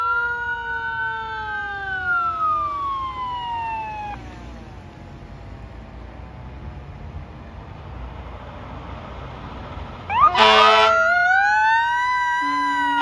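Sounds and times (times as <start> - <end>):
fire truck siren falling in pitch: 0.0 - 4.3, 10.1 - 13.0
truck low rumble: 0.0 - 13.0.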